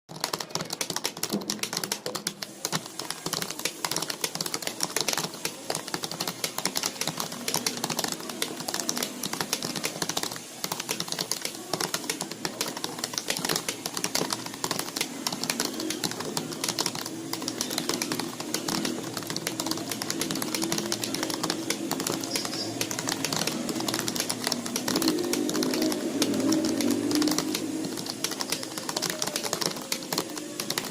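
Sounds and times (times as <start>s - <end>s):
fast typing on a keyboard: 0.1s - 30.9s.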